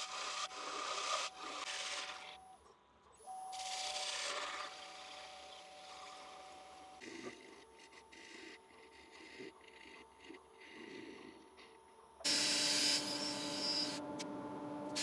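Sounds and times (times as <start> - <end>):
steady hum: 12.2 - 15.0
rough hissing abrasion on wood: 12.3 - 14.0.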